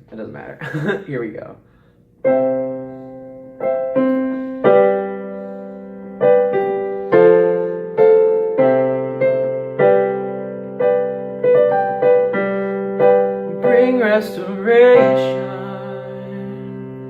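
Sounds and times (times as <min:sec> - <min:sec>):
piano playing slow chords: 0:01.8 - 0:17.0.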